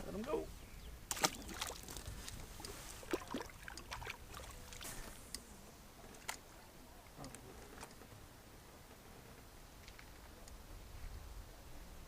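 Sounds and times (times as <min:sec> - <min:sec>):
lake water lapping: 0:01.1 - 0:07.2.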